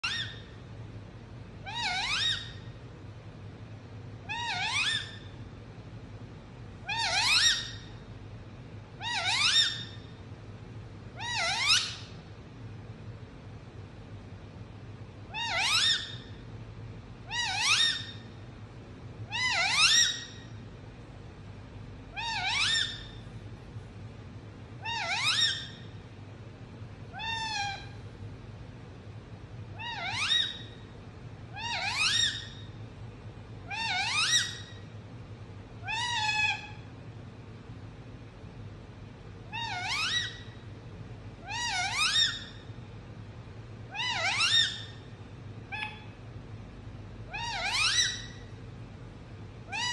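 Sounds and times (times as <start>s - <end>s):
parrot rising calls: 0.0s - 0.5s, 1.6s - 2.7s, 4.2s - 5.3s, 6.8s - 8.0s, 9.0s - 10.1s, 11.2s - 12.2s, 15.3s - 16.4s, 17.2s - 18.2s, 19.3s - 20.4s, 22.1s - 23.2s, 24.8s - 25.9s, 27.1s - 28.0s, 29.7s - 30.8s, 31.5s - 32.7s, 33.6s - 34.8s, 35.8s - 36.8s, 39.5s - 40.6s, 41.4s - 42.6s, 43.9s - 45.1s, 45.7s - 46.2s, 47.3s - 48.5s, 49.7s - 49.9s.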